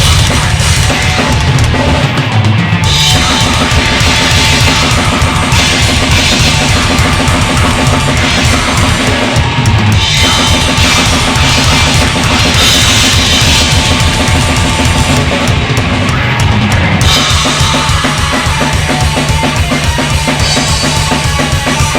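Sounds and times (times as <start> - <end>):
fast bass drum strokes: 0.0 - 21.9
heavy metal music: 0.0 - 21.9.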